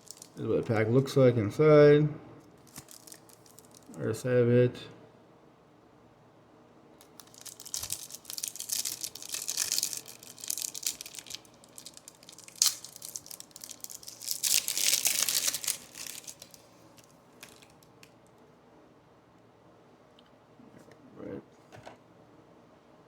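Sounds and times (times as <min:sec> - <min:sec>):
foil wrapper crinkling: 0:00.0 - 0:00.4, 0:02.6 - 0:04.0, 0:07.0 - 0:17.9.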